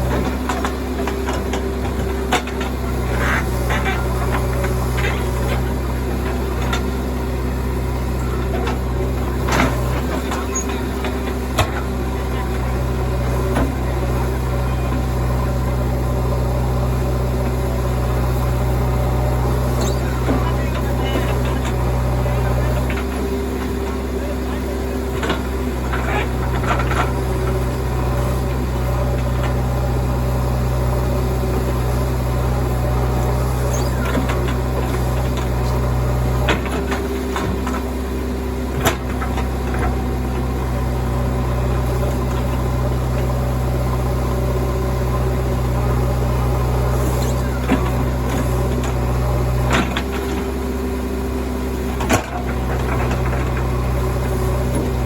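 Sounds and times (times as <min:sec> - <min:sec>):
heavy diesel engine running: 0:00.0 - 0:55.0
machinery clanking: 0:16.4 - 0:29.8.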